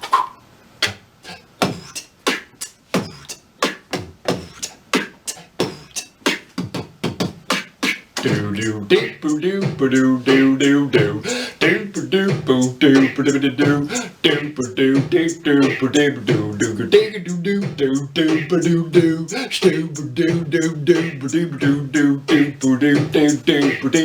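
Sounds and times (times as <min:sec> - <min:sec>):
person beatboxing: 0:00.1 - 0:24.0
hummed bass vocal line: 0:08.2 - 0:24.0.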